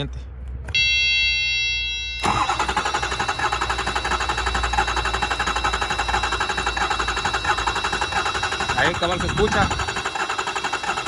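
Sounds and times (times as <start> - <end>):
diesel engine cranking: 2.2 - 11.0.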